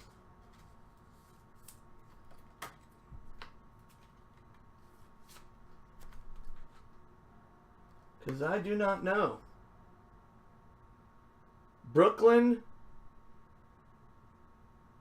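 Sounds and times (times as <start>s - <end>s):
trading cards rustling and clicking: 0.0s - 7.0s.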